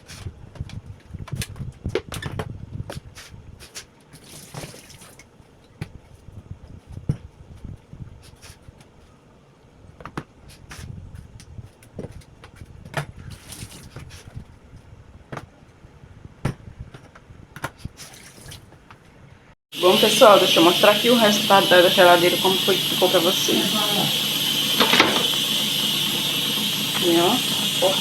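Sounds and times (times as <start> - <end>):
household items knocking: 24.8 - 25.4.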